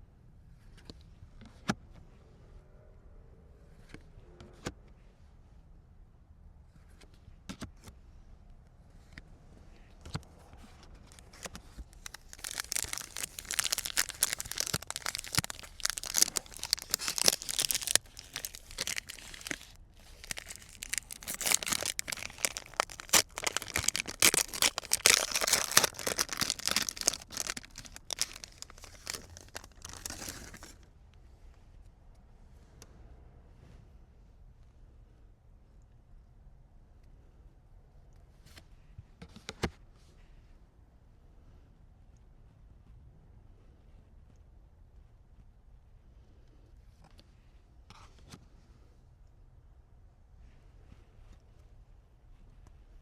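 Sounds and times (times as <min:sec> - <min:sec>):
card packaging tearing and crinkling: 0:11.1 - 0:30.8.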